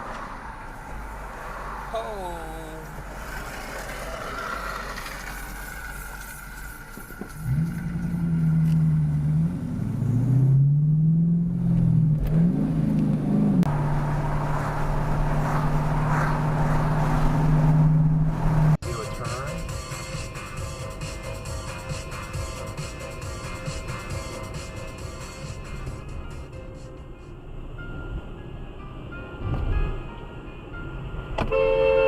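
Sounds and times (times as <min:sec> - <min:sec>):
vehicle engine revving: 0:03.0 - 0:18.8.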